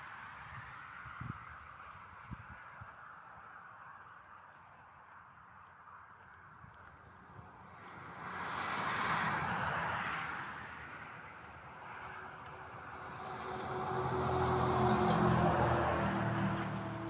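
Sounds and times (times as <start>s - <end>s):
vehicle passing by: 12.0s - 17.0s.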